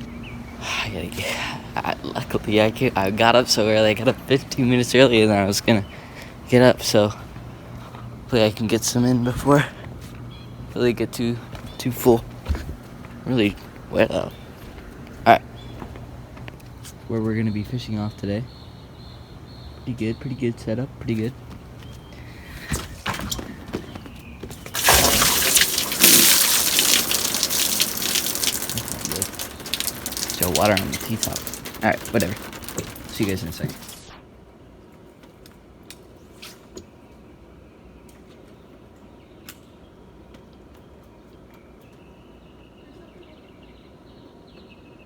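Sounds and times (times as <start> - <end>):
outdoor background noise: 0.0 - 45.0
small bird singing: 16.9 - 22.4
water pouring off canopy: 24.7 - 34.1.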